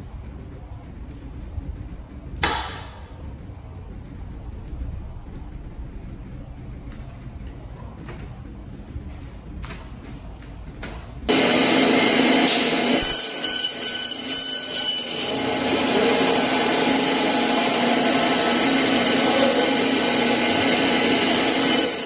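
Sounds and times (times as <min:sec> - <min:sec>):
bandsaw running: 0:11.3 - 0:22.0.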